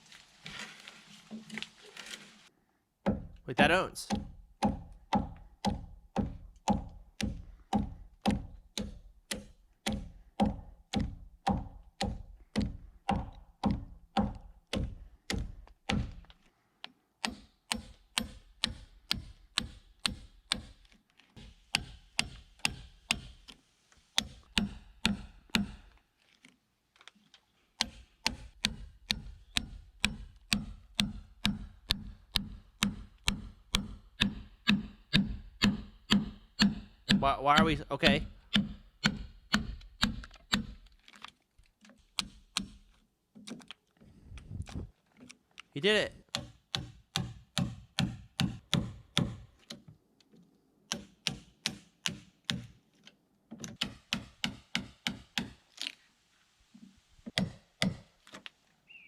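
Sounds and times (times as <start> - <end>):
hand tool striking wood: 4.1 - 16.2, 17.2 - 20.8, 21.4 - 23.4, 24.2 - 25.9, 27.8 - 40.9, 42.2 - 42.8, 46.3 - 49.8, 50.9 - 52.7, 53.8 - 55.6, 57.3 - 58.1.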